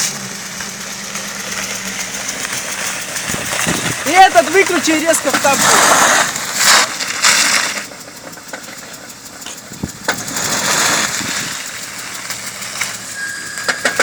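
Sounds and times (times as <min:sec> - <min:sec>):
engine running with a knock: 0:00.0 - 0:14.0.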